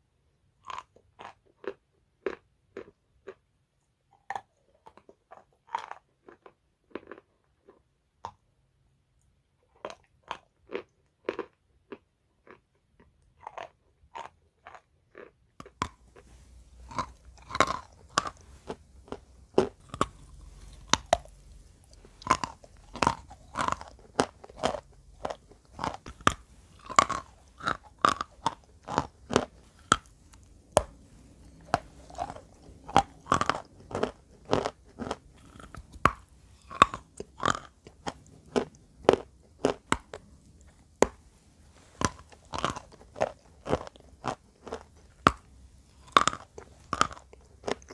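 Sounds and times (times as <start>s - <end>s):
faint low hum: 0.0s - 47.9s
chewing crunchy chalk: 4.2s - 7.8s, 9.7s - 47.9s.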